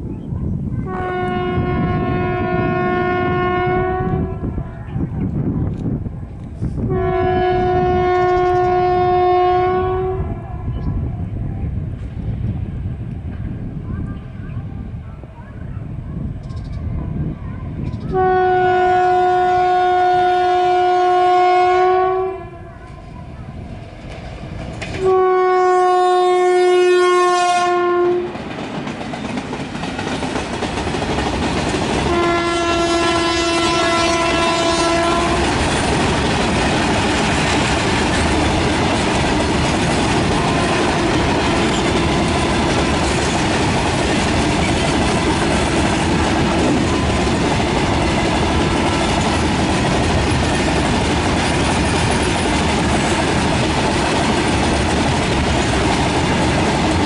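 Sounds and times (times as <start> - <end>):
locomotive horn blasts: 0.8 - 4.8, 6.9 - 10.7, 18.1 - 22.7, 25.0 - 28.4, 32.1 - 35.6, 40.4 - 42.6
freight wagons rumbling and clattering: 35.5 - 57.0.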